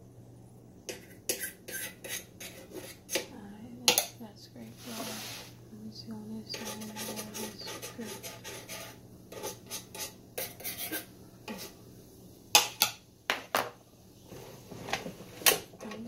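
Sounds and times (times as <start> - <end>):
utensils scraping pans: 0.9 - 3.3, 6.5 - 11.8.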